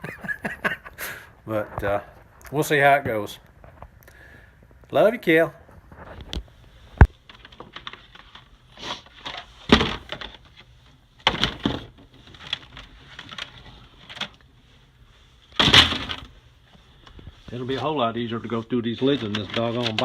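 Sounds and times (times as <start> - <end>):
rustling: 1.5 - 20.0
plastic containers clattering: 7.0 - 14.5, 15.5 - 16.4, 18.8 - 20.0.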